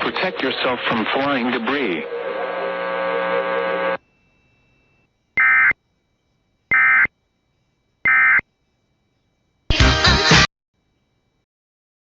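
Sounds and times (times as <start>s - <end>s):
buzzy digital data tones: 0.6s - 5.8s.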